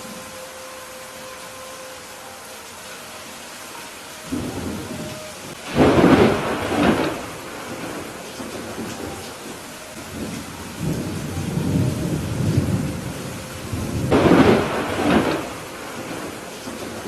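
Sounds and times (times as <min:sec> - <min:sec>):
steady rain: 0:00.0 - 0:17.0
thunder rumbling: 0:04.3 - 0:17.0.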